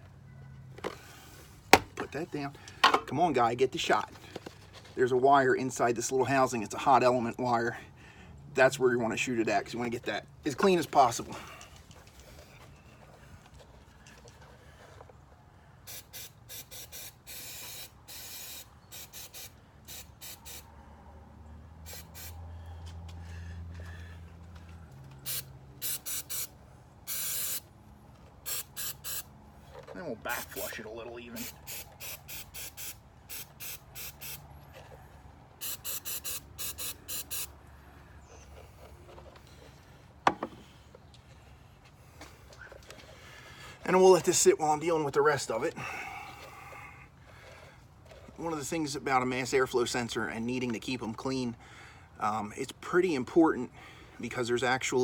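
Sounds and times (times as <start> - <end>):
aerosol can spraying: 15.9 - 20.6, 21.9 - 22.4, 25.2 - 26.5, 27.1 - 27.7, 28.5 - 29.3, 31.4 - 34.4, 35.6 - 37.5.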